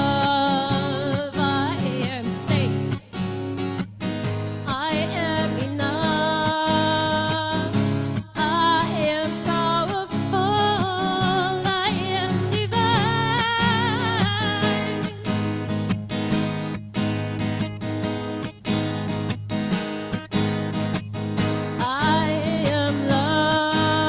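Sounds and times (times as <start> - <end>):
person singing: 0.0 - 3.2, 4.7 - 15.3, 21.8 - 24.0
strummed acoustic guitar: 0.0 - 24.0.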